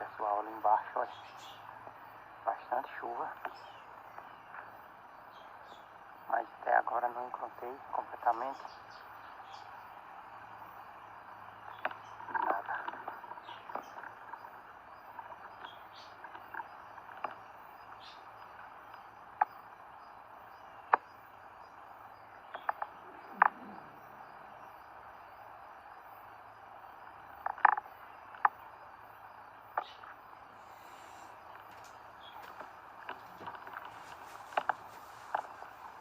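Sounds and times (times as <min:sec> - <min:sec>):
rain hissing: 0:30.4 - 0:36.0.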